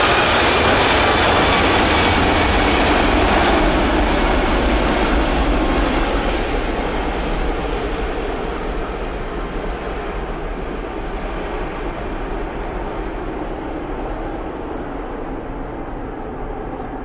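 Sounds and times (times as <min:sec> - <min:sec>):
jet engines roaring: 0:00.0 - 0:17.0.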